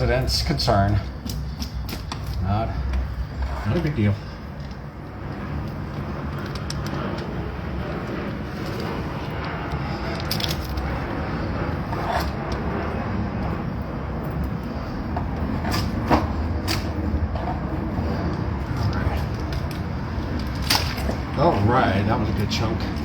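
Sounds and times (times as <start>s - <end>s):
low rumble: 0.0s - 23.0s.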